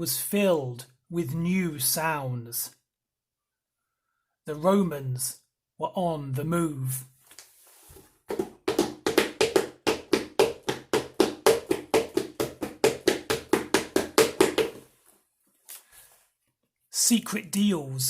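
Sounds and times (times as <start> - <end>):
marching footsteps stamping: 8.3 - 14.9.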